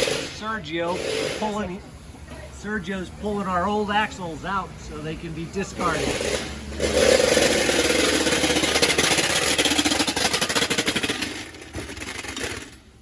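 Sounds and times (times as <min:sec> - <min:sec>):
power tool hammering rapidly: 0:00.0 - 0:01.6, 0:05.8 - 0:12.5.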